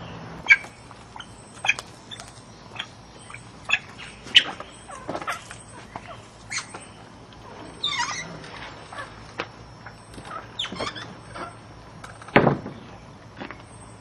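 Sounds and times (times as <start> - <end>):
birds chirping and squawking: 0.0 - 14.0
scuffling ticks: 0.6 - 2.4
sharp thump: 12.4 - 12.8.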